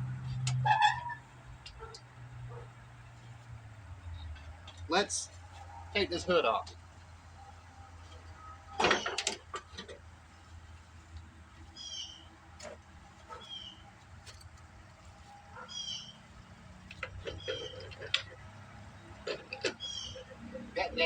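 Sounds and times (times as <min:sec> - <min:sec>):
hood clattering: 0:08.0 - 0:16.1, 0:16.8 - 0:20.4.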